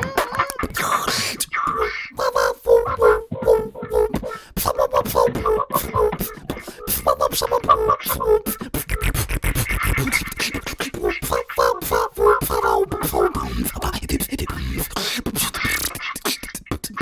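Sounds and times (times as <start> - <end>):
beatboxing drum hits: 0.0 - 17.0
hummed melody: 2.2 - 4.4.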